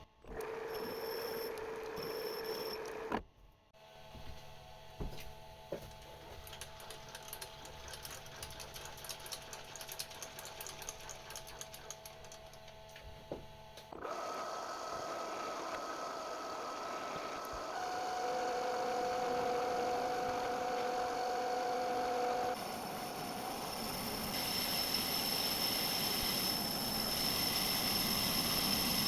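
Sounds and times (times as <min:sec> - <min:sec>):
metal lathe scraping: 0:16.7 - 0:29.0.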